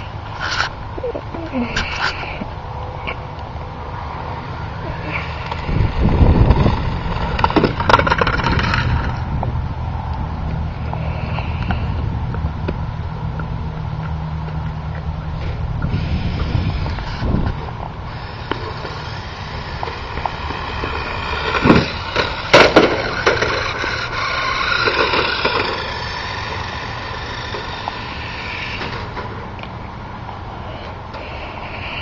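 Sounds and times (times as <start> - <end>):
toy car electric motor whining: 4.7 - 9.3, 15.4 - 29.6
toy car clattering on ground: 4.9 - 9.3, 15.5 - 29.4.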